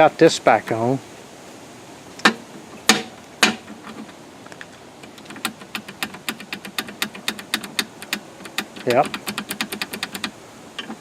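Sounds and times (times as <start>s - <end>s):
table saw parts clicking: 2.2s - 11.0s.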